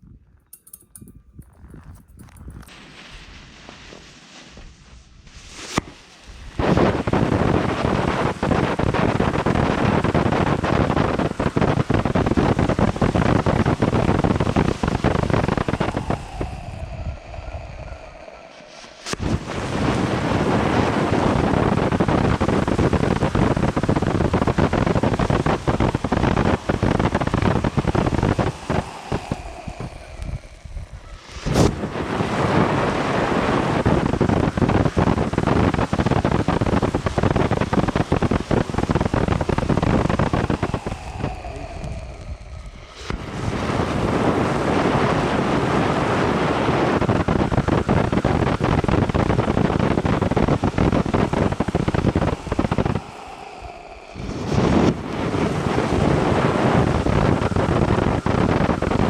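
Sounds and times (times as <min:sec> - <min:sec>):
firework tube popping: 0:00.1 - 0:17.8, 0:18.6 - 0:45.7
firework fountain hissing: 0:02.4 - 0:59.0.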